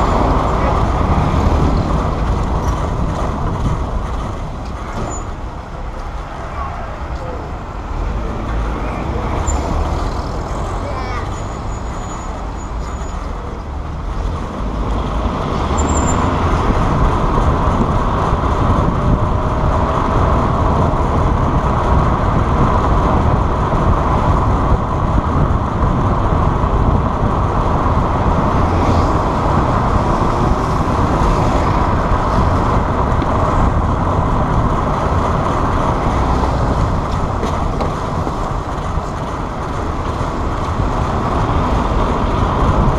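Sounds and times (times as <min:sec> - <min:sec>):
road and wind noise from vehicle: 0:00.0 - 0:42.9.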